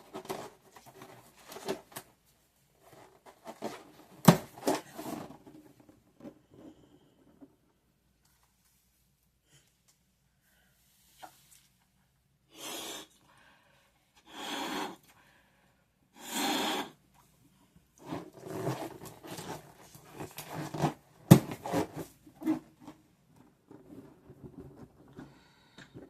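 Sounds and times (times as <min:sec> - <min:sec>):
breaths blown into balloon: 0:14.2 - 0:15.1, 0:16.2 - 0:17.0.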